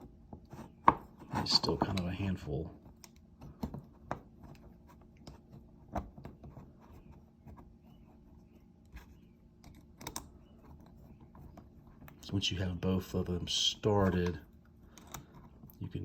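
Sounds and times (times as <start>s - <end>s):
small parts clicking and tapping: 2.8s - 6.6s, 8.8s - 12.3s, 14.0s - 15.8s.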